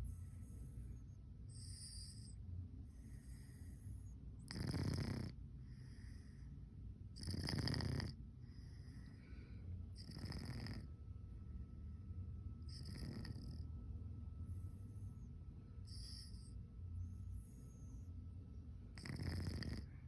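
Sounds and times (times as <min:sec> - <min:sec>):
cat snoring: 0:01.5 - 0:06.5, 0:07.1 - 0:11.0, 0:12.6 - 0:13.7, 0:14.6 - 0:16.6, 0:18.9 - 0:20.0.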